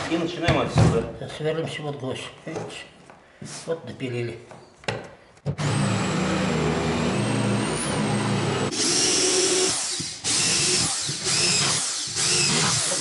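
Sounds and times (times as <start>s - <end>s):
electric drill boring into wood: 5.6s - 13.0s.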